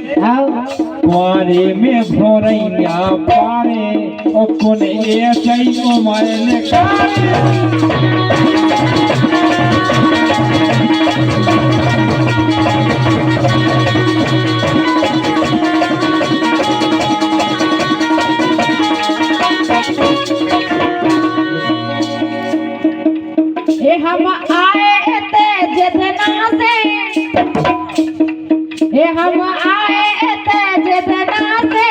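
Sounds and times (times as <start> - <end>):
fast drumming: 0.0 - 23.0, 23.6 - 31.9
rattling percussion: 0.0 - 31.9
sustained instrumental tones: 4.6 - 23.7.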